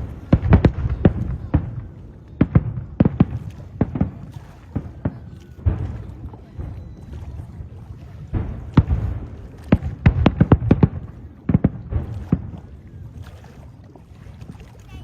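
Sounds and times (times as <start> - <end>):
fireworks bangs: 0.0 - 7.5, 8.2 - 12.7.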